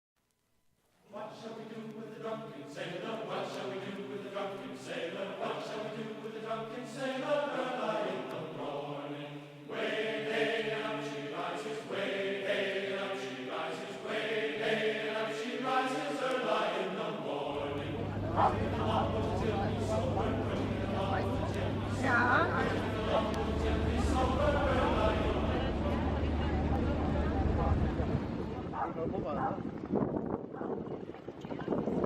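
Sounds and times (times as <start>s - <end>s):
choir singing held notes: 1.1s - 26.5s.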